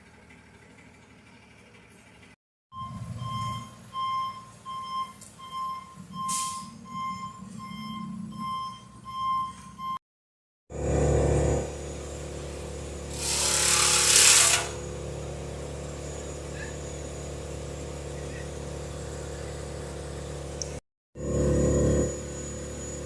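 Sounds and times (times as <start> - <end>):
large engine idling: 0.0 - 6.3, 10.8 - 13.2, 14.7 - 23.0.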